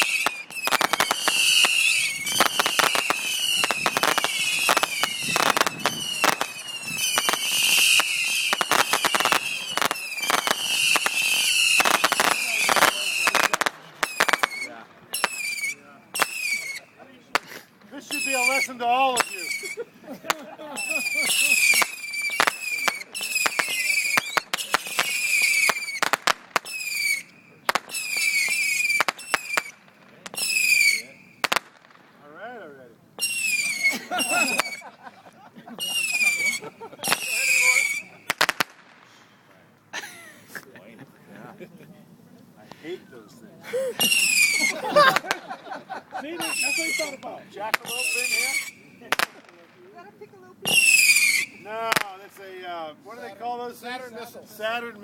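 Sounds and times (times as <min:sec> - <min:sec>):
whistling shots: 0:00.0 - 0:16.9, 0:18.1 - 0:19.8, 0:21.1 - 0:29.8, 0:30.4 - 0:31.4, 0:35.8 - 0:38.4, 0:44.0 - 0:44.8, 0:46.7 - 0:47.2, 0:47.8 - 0:48.9, 0:50.7 - 0:52.2
sharp cracks and bangs: 0:31.4 - 0:32.2, 0:38.3 - 0:39.2.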